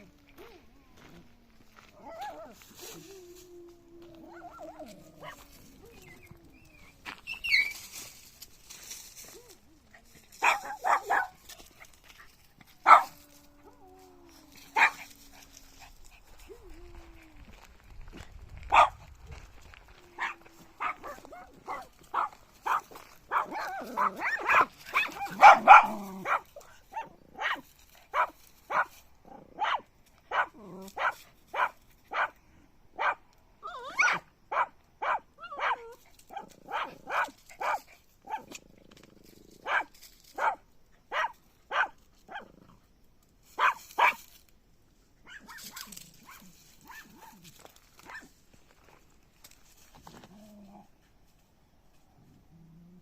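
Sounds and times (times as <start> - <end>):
puppy barking: 10.4 - 11.4, 12.8 - 13.2, 14.8 - 15.1, 18.7 - 19.0, 20.2 - 27.6, 28.2 - 28.9, 29.6 - 32.4, 33.0 - 33.2, 33.9 - 38.5, 39.6 - 42.5, 43.6 - 44.2, 45.2 - 47.4.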